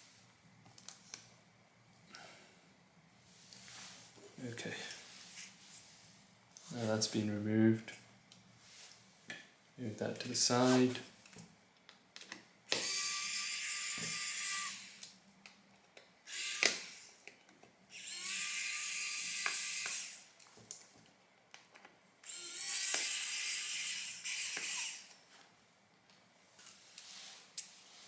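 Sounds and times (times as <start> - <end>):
electric hand tool whirring: 12.7 - 15.0, 16.3 - 17.1, 17.9 - 20.3, 22.2 - 25.1.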